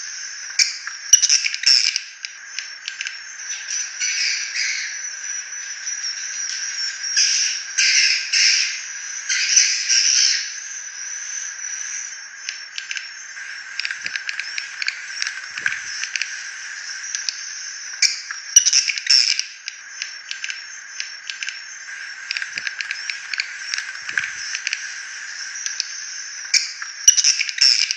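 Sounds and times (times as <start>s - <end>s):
buzzy bird chirps: 0.1s - 2.1s, 3.0s - 27.9s
rapid clicking twitters: 12.5s - 27.9s.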